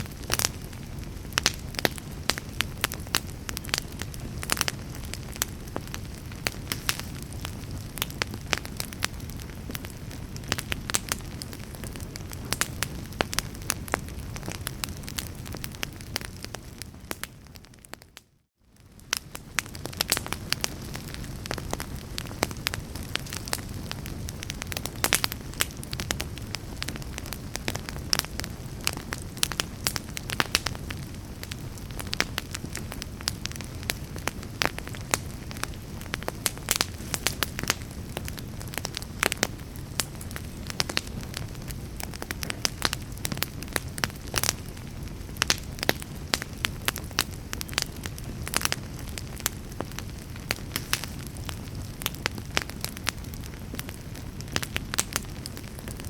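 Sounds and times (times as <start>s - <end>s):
low rumble of flames: 0.0s - 56.0s
wood fire crackling: 0.0s - 56.0s.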